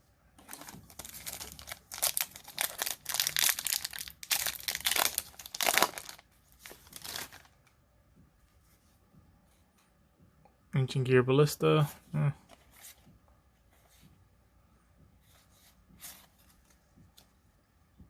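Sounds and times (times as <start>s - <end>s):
foil wrapper crinkling: 0.5s - 7.6s.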